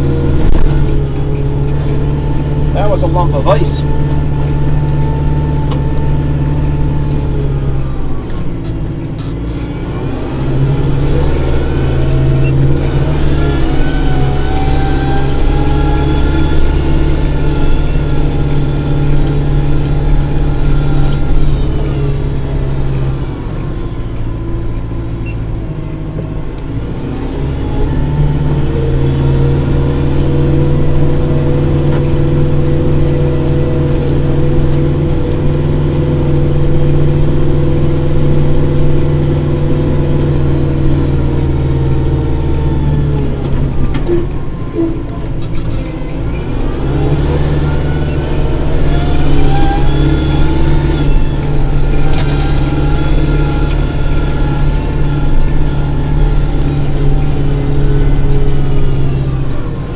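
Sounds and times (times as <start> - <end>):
tractor diesel engine running: 0.0 - 59.9.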